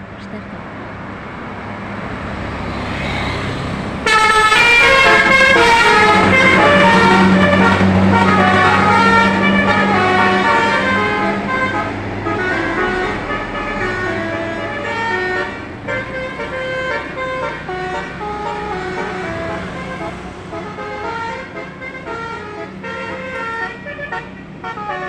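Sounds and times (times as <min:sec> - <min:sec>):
bus musical horn playing a tune: 0:04.0 - 0:25.0.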